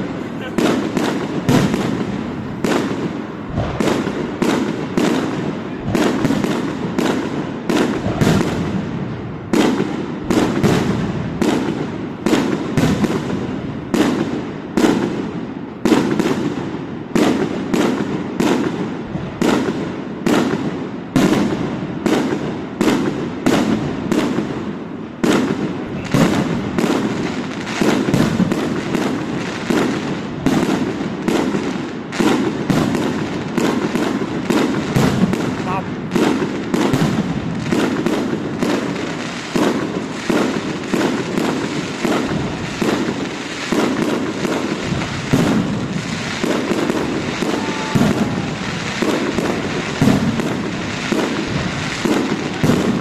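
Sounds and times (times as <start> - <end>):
fireworks crackle and rumble: 0.0 - 53.0
fireworks shells bursting: 22.2 - 53.0.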